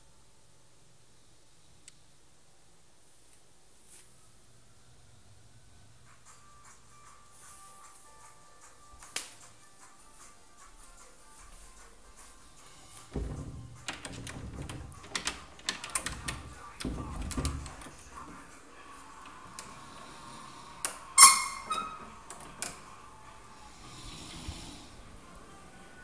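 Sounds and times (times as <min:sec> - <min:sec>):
clicks and knocks: 0:13.1 - 0:18.5
person snoring: 0:19.6 - 0:21.1, 0:23.5 - 0:25.2.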